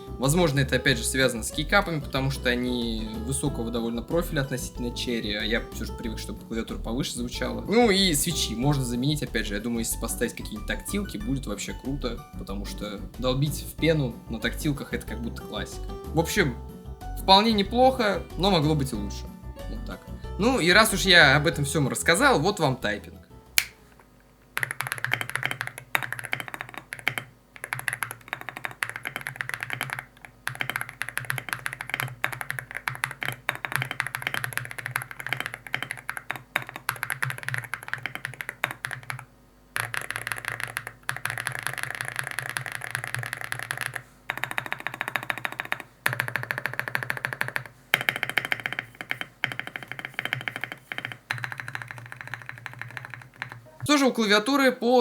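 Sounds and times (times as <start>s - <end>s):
typing on mechanical keyboard: 24.6s - 53.9s.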